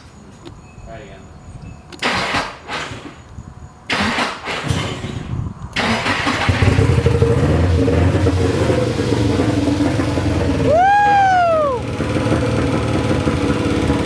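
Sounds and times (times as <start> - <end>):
car engine sputtering and running: 5.8 - 14.0.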